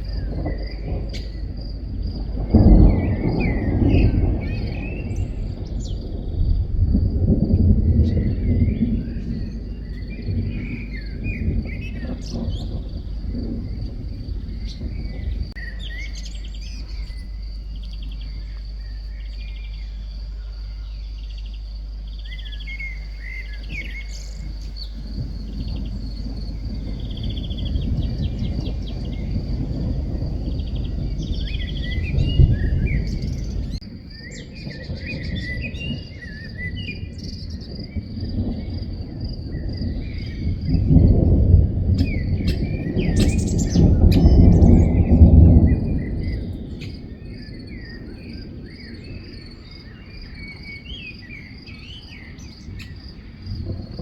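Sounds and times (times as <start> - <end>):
low rolling thunder: 0.0 - 54.0
birds chirping: 7.5 - 36.3, 42.0 - 53.1.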